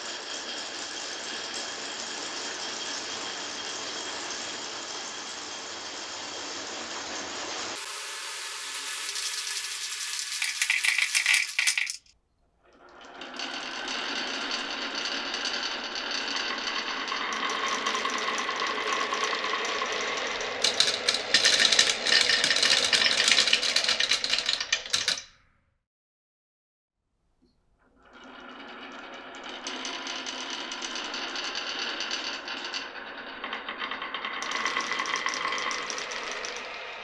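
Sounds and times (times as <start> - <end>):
marbles rolling on wooden run: 7.2 - 25.3, 28.1 - 37.0.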